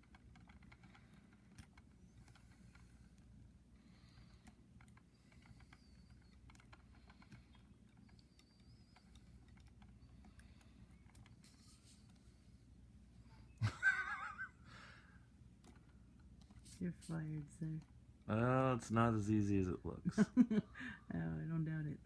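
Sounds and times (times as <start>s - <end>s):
small plastic clicks and ticks: 0.0s - 12.4s, 15.6s - 16.7s
low steady hum: 0.0s - 22.0s.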